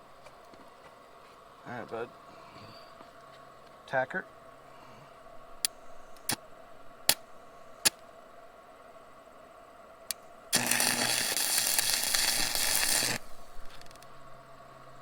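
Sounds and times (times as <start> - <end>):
welding arc crackling and hissing: 10.5 - 14.2.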